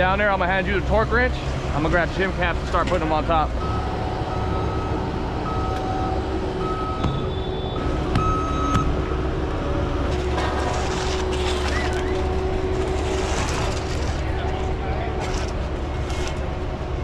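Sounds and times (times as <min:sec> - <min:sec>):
reversing alarm beeping: 0:03.6 - 0:09.1.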